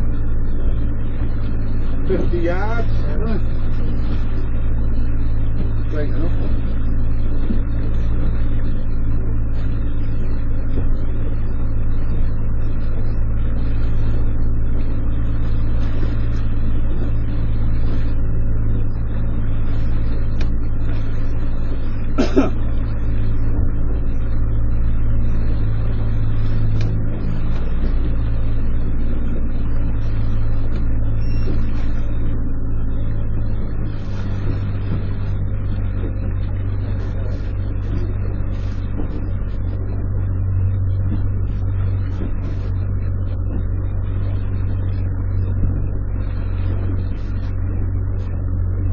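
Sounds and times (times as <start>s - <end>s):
boat engine running: 0.0s - 48.9s.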